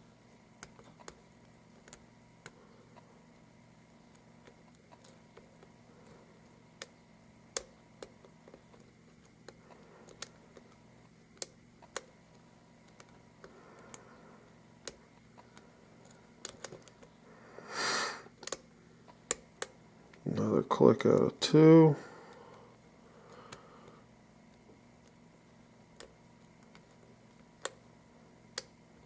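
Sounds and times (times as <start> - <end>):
lock pick clicking on pins: 18.4 - 18.7.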